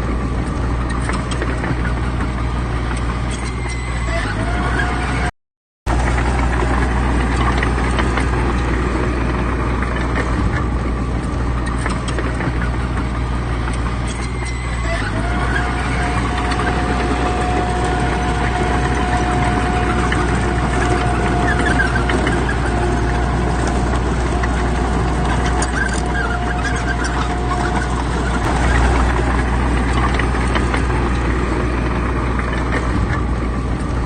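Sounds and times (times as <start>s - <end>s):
heavy diesel machinery running: 0.0s - 5.3s, 5.9s - 34.0s
steady high whine: 12.4s - 34.0s.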